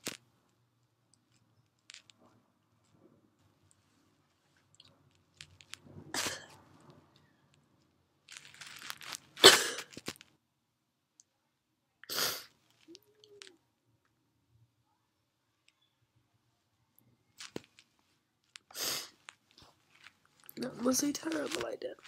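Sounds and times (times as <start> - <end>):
woman sneezing: 6.2 - 6.5, 9.4 - 9.9, 12.1 - 12.5.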